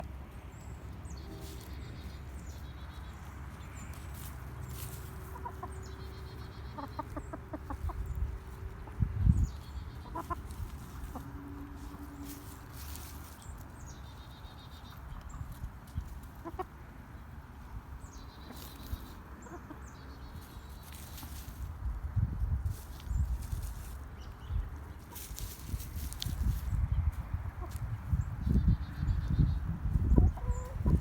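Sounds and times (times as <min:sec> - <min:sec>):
chickens clucking: 0:00.0 - 0:31.0
wind rumble on microphone: 0:07.6 - 0:11.4, 0:21.5 - 0:31.0.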